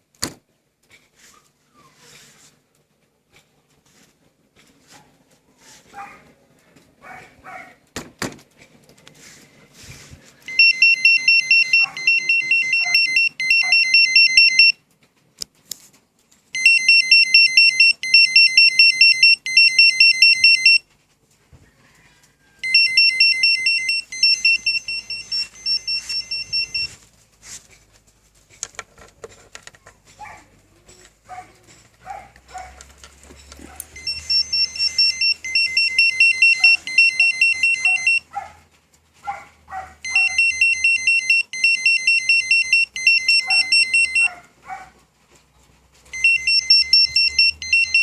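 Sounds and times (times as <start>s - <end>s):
motorcycle alarm fast beeps: 10.5s - 14.8s, 16.6s - 20.8s, 22.6s - 26.9s, 34.0s - 38.2s, 40.1s - 44.3s, 46.1s - 48.0s.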